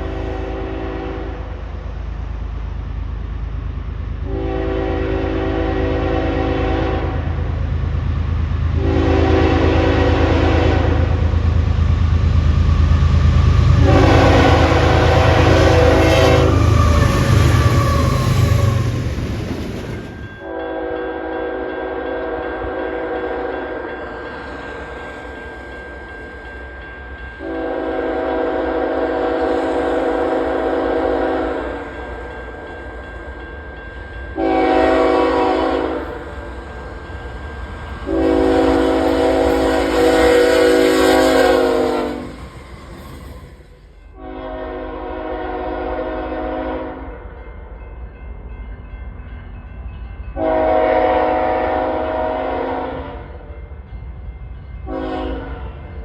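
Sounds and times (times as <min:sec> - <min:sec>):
train horn blasts: 0:00.0 - 0:01.6, 0:04.2 - 0:07.6, 0:08.7 - 0:11.4, 0:13.6 - 0:18.9, 0:20.4 - 0:24.0, 0:27.4 - 0:32.0, 0:34.3 - 0:36.8, 0:37.8 - 0:43.4, 0:44.1 - 0:47.2, 0:50.4 - 0:53.4, 0:54.8 - 0:55.8
low rumble of passing train: 0:00.0 - 0:56.0.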